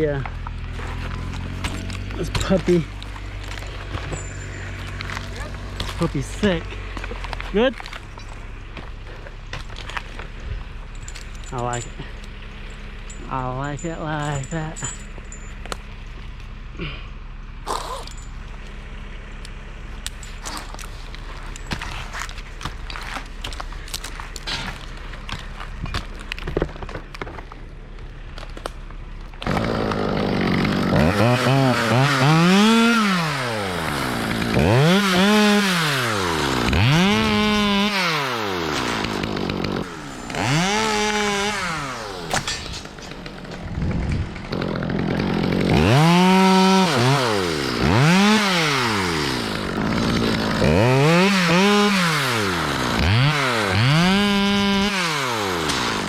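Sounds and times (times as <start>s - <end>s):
chainsaw revving: 0.0s - 8.0s, 29.4s - 56.0s.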